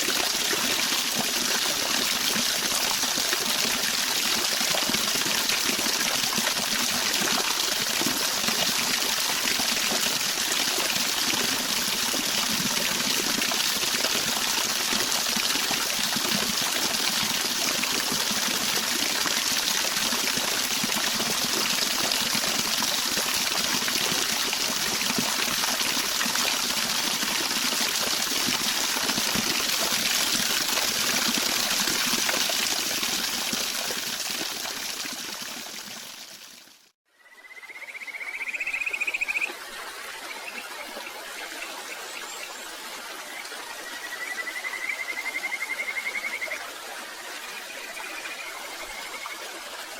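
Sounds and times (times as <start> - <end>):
flowing water rushing: 0.0 - 36.9, 38.4 - 49.9.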